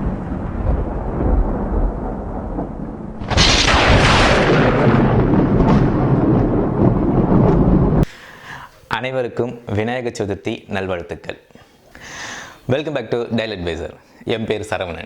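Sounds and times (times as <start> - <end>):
deep thunder-like rumble: 0.0 - 8.1
sudden hissing crash: 3.2 - 6.0.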